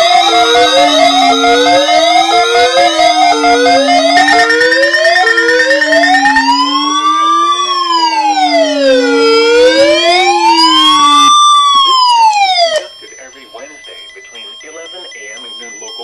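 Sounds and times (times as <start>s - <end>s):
steady low drone: 0.0s - 12.1s
electronic siren-like wail: 0.0s - 14.0s.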